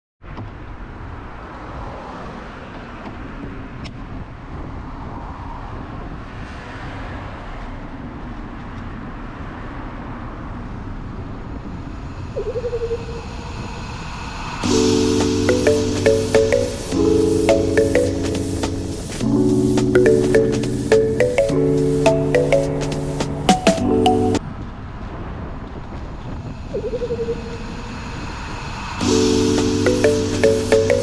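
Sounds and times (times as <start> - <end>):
wavering tone: 14.6 - 24.4, 29.0 - 31.0.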